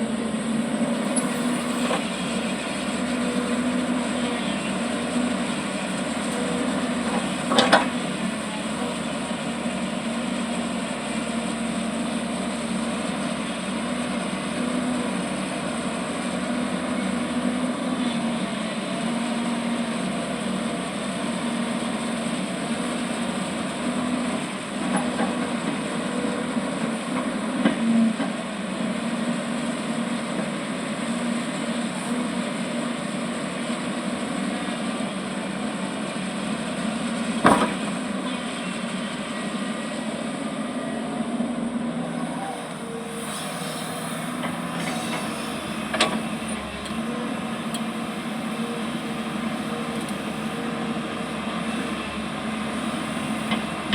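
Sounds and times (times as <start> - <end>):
digging machine diesel engine: 0.0 - 53.9.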